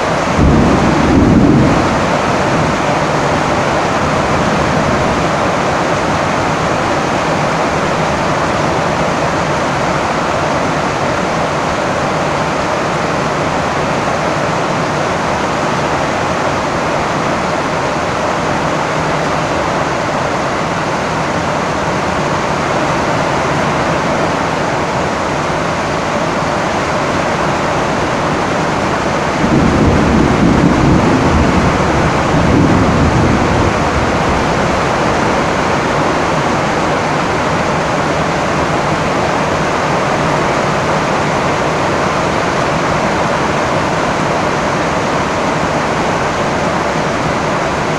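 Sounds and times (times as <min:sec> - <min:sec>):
low rumble of thunder: 0:00.0 - 0:06.4, 0:29.2 - 0:36.5
rain on a tin roof: 0:00.0 - 0:47.9.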